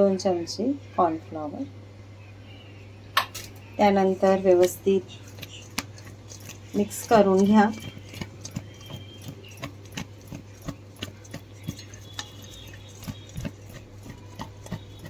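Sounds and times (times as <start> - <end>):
food being mixed in a bowl: 3.2 - 15.0.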